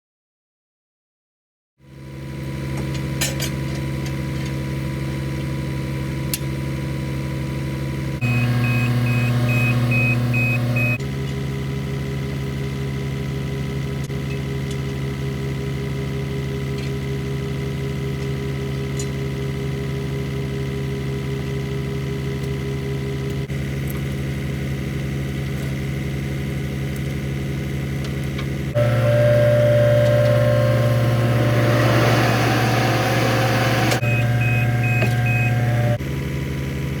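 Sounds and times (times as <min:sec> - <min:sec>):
excavator diesel engine running: 0:06.9 - 0:37.0
short high beeps: 0:08.2 - 0:11.0, 0:34.0 - 0:35.8.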